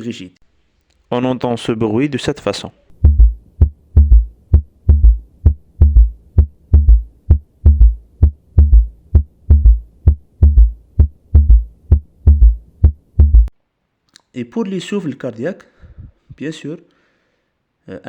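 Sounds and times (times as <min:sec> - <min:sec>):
heartbeat gallop thuds: 0:02.9 - 0:13.5.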